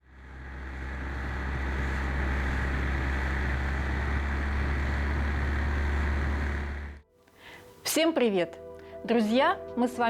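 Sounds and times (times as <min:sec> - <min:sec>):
outboard motor running: 0:00.0 - 0:07.0.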